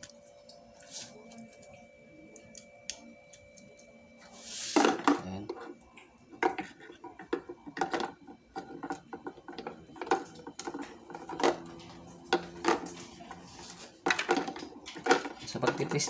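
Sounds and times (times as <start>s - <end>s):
small hard parts clicking and clattering: 6.4s - 16.0s.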